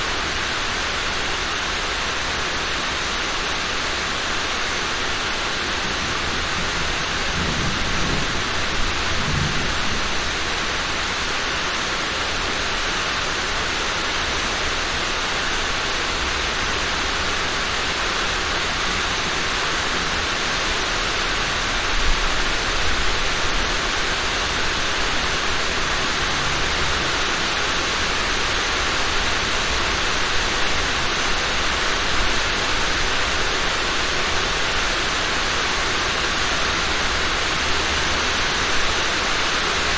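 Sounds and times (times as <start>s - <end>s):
rain hiss: 0.0s - 39.9s
rolls of thunder: 7.4s - 10.0s.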